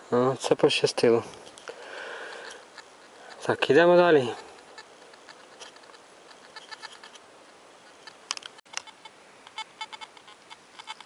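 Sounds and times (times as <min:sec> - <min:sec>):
metal detector beeping: 0:08.8 - 0:11.0.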